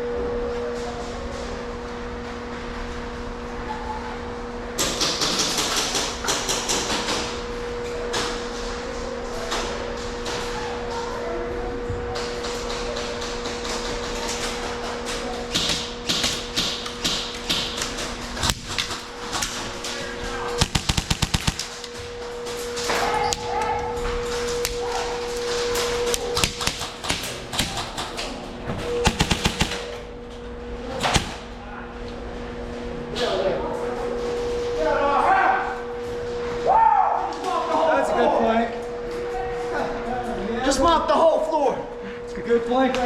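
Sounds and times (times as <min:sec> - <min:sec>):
steady hum: 0:11.6 - 0:42.8
airsoft gun shots: 0:20.6 - 0:21.8, 0:26.4 - 0:28.1, 0:29.0 - 0:30.0, 0:31.0 - 0:31.5.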